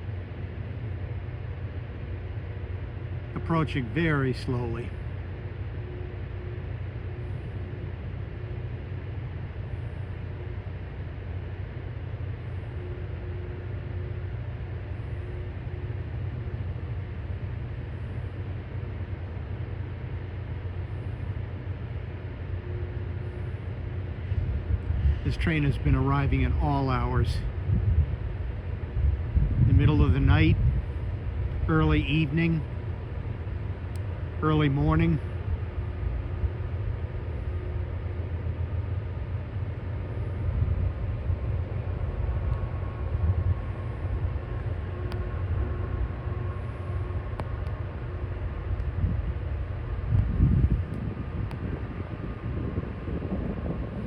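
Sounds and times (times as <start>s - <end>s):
diesel locomotive rumble: 0.0s - 54.0s.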